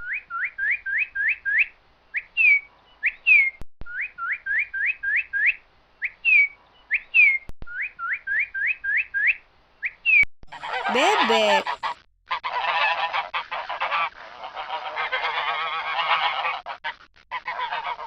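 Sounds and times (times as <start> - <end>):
bird whistled song: 0.0 - 10.2.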